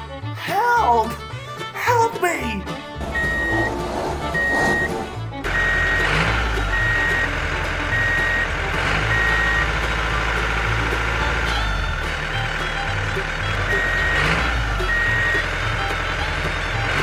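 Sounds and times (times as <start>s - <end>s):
low engine rumble: 0.0s - 17.0s
vehicle reversing alarm beeping: 3.0s - 10.2s, 13.6s - 14.2s, 14.8s - 15.5s.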